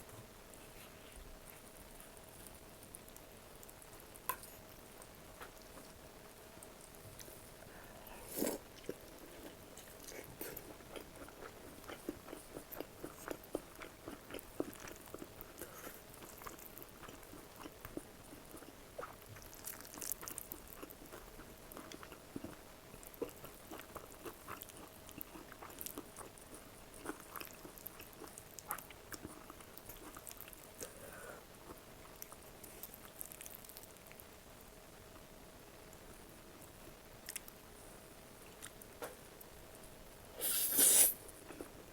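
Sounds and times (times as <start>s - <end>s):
faint steady hum: 0.0s - 41.9s
person chewing and biting: 10.4s - 15.4s.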